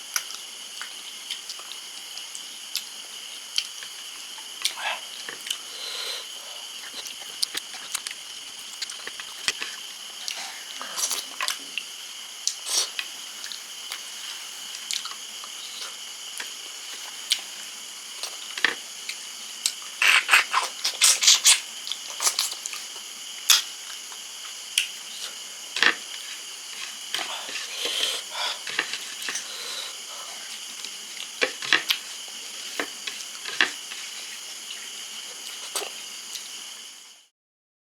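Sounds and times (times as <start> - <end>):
person chewing food: 0.1 - 5.7, 6.6 - 14.0, 14.7 - 17.5, 18.2 - 25.4, 26.0 - 36.6.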